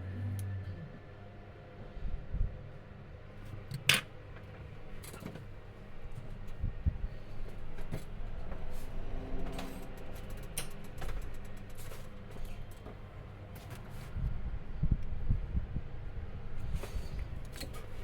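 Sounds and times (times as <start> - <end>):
tools clicking on metal parts: 9.7 - 11.8.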